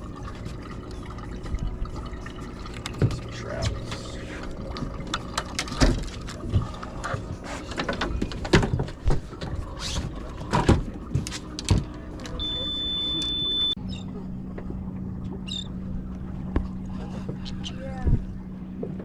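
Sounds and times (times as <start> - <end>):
high beep: 12.4 - 13.8.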